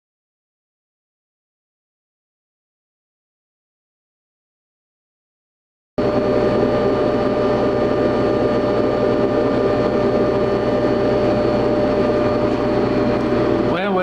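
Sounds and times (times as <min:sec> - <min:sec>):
buffing machine humming: 0:06.0 - 0:14.0.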